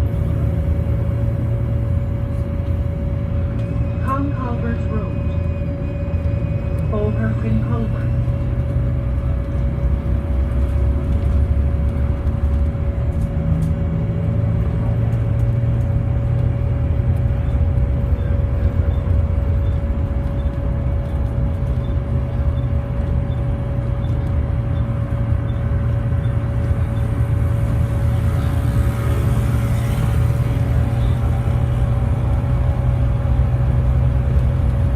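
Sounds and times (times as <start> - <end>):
steady mid-pitched whine: 0.0 - 13.2
bus engine low rumble: 0.0 - 34.9.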